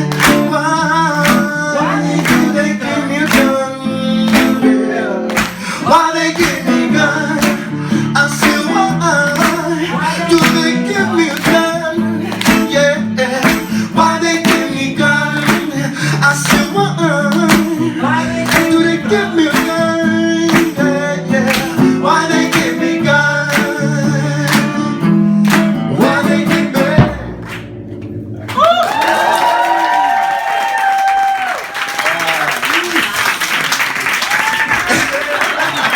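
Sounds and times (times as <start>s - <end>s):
person singing: 0.0s - 27.4s
strummed acoustic guitar: 0.0s - 28.4s
audience cheering: 28.4s - 35.9s.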